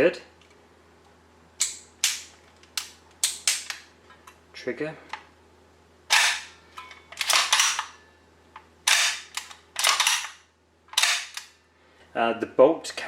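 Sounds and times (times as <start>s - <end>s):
toy gun bolt clacking: 7.2s - 7.9s, 8.9s - 10.4s.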